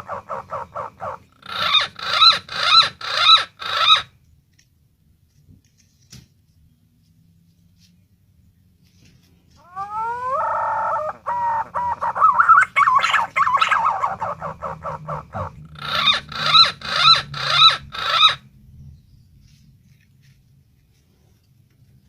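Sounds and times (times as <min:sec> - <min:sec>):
pigeon whistled song: 0:09.7 - 0:18.4.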